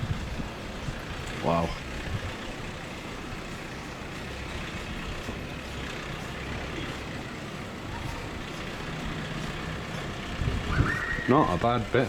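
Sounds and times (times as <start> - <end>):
gusty wind on microphone: 0.0 - 1.2, 10.3 - 11.6.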